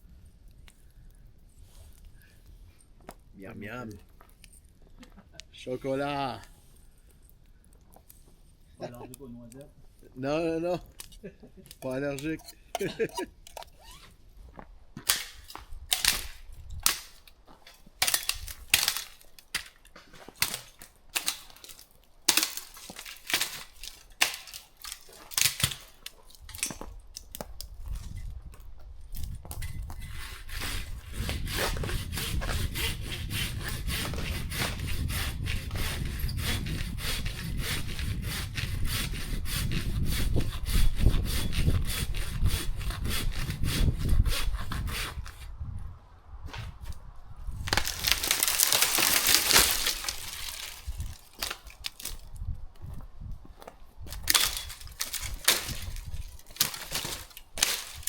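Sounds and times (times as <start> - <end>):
hand saw cutting wood: 11.7 - 14.1, 18.0 - 26.8, 29.9 - 45.5, 47.7 - 52.1, 54.2 - 58.0.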